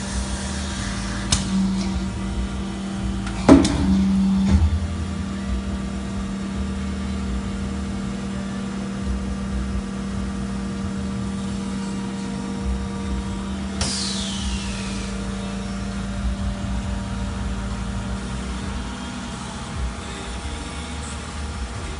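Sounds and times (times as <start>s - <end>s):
welding machine humming: 0.0s - 21.9s
hiss sweeping down in pitch: 13.8s - 16.1s.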